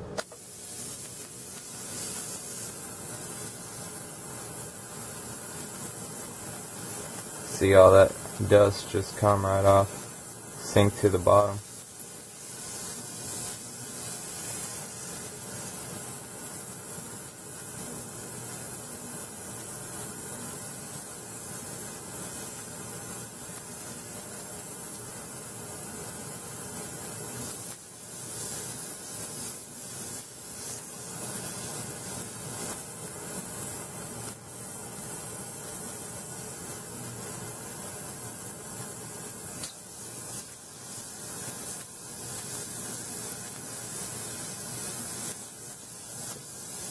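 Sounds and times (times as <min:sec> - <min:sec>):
ultrasonic cleaner hissing: 0:00.0 - 0:46.9.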